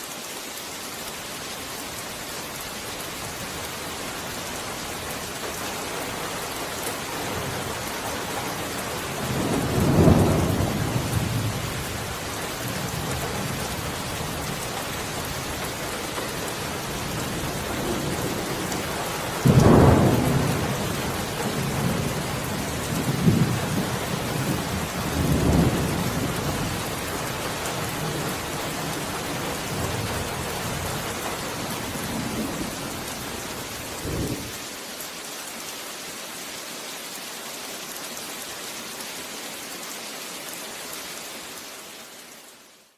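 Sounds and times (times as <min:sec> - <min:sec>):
heavy rain: 0:00.0 - 0:42.9
thunder rumbling: 0:09.1 - 0:15.1, 0:16.8 - 0:26.9.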